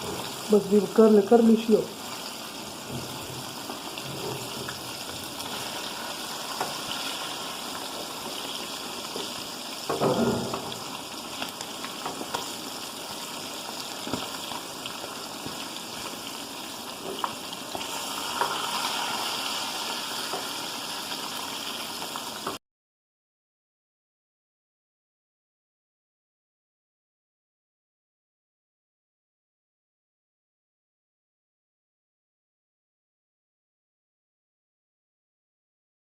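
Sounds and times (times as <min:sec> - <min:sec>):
chicken sizzling in hot oil: 0:00.0 - 0:22.6.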